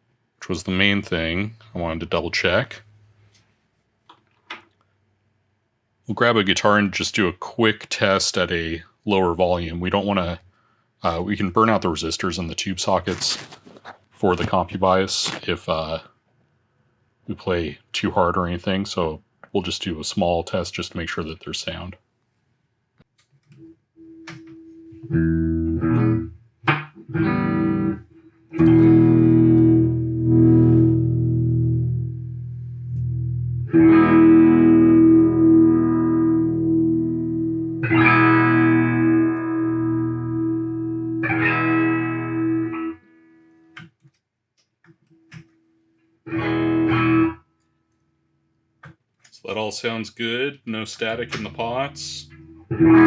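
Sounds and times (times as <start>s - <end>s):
electric guitar chords through amp: 24.0s - 43.3s, 46.3s - 47.4s, 51.4s - 53.0s.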